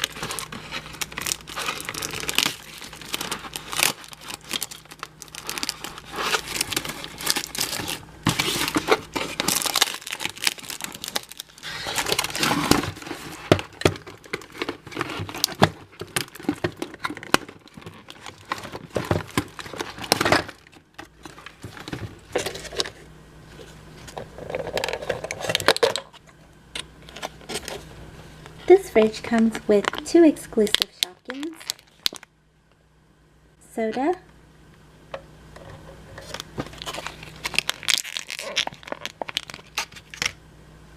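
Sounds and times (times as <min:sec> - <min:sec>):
packaging tearing: 0:00.0 - 0:22.9, 0:30.7 - 0:32.3, 0:36.2 - 0:40.4
plastic and cardboard crinkling: 0:00.0 - 0:26.4, 0:27.0 - 0:32.3, 0:36.1 - 0:40.4.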